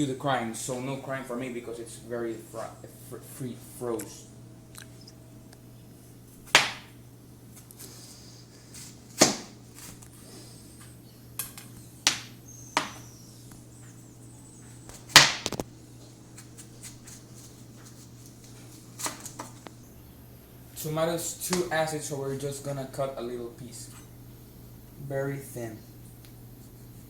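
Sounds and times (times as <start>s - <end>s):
knife chopping on cutting board: 6.5s - 6.9s, 9.2s - 9.6s.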